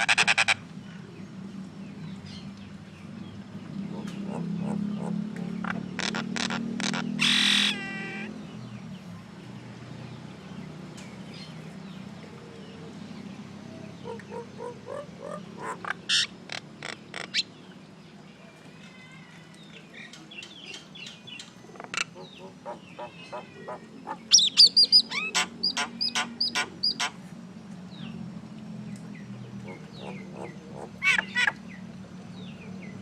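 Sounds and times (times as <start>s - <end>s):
myna bird calling: 3.8s - 9.0s, 13.7s - 17.7s, 18.4s - 27.2s, 29.4s - 32.6s.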